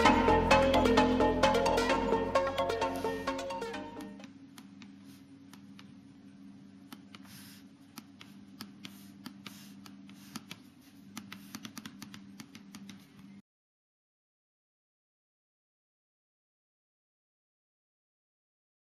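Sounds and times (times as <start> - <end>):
faint steady hum: 0.0 - 13.4.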